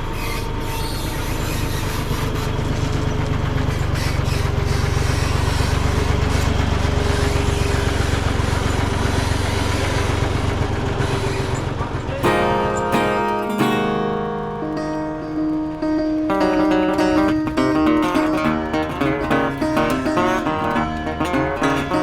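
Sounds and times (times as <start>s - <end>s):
heavy machine engine rumbling: 0.0s - 22.0s
acoustic guitar music: 12.2s - 22.0s.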